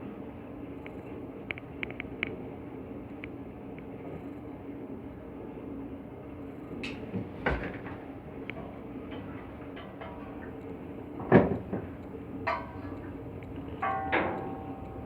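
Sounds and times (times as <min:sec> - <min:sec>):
machinery hum: 0:00.0 - 0:15.0
metal knocks and clanks: 0:09.0 - 0:10.6, 0:11.2 - 0:13.2, 0:13.8 - 0:15.0.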